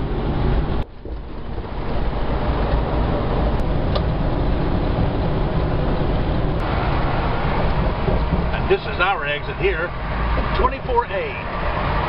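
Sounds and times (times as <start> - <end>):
truck and tyre rumble: 0.0 - 12.0
wind rushing through windows: 0.0 - 12.0.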